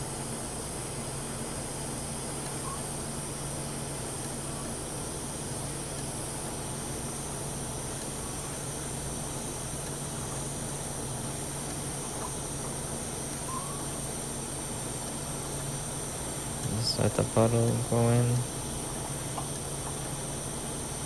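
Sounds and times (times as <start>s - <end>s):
welding arc hissing: 13.0s - 21.0s.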